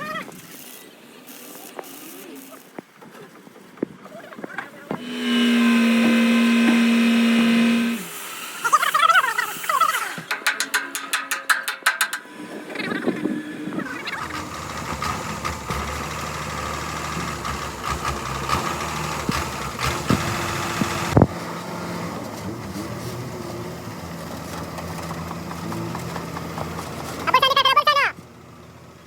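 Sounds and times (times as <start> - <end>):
high steady whine: 3.8 - 10.9
engine running steadily: 4.4 - 9.4, 12.3 - 29.0.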